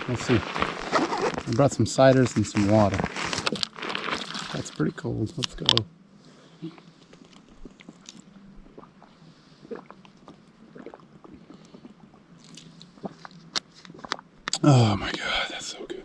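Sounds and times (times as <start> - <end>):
wet swallowing clicks: 6.6 - 14.7
person gulping water: 6.6 - 15.1.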